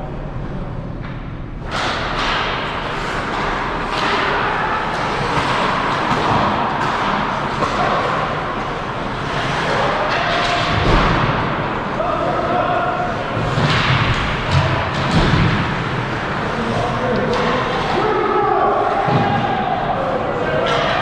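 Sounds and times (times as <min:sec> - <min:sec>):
hockey sticks and puck knocking: 0:01.6 - 0:11.8, 0:13.1 - 0:18.2
skates scraping ice: 0:01.8 - 0:11.8.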